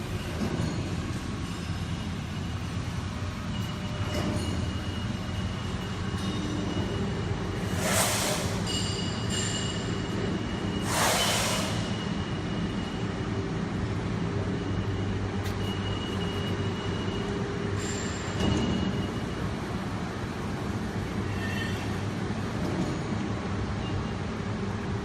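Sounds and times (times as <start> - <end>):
short hissing bursts: 7.7 - 8.7, 10.8 - 12.0.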